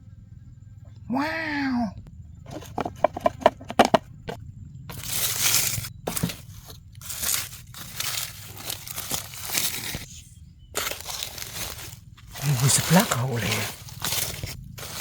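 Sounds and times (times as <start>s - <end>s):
dry leaves crunching and rustling: 4.9s - 15.0s.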